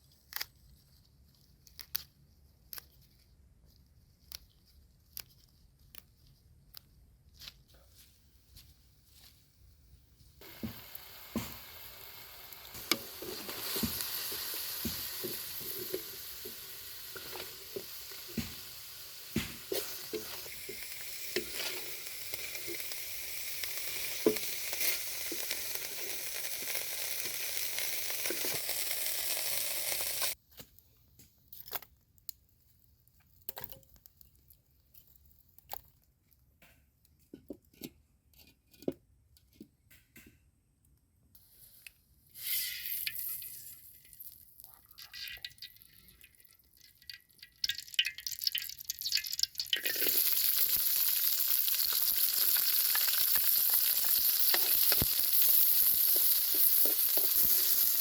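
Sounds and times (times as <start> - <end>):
food sizzling in oil: 10.4 - 30.4, 42.4 - 58.0.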